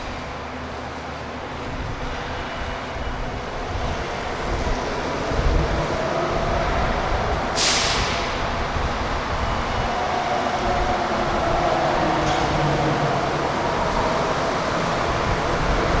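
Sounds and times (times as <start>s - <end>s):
electric trolleybus hum and whine: 0.0s - 16.0s
sharp hiss of air: 7.5s - 8.6s.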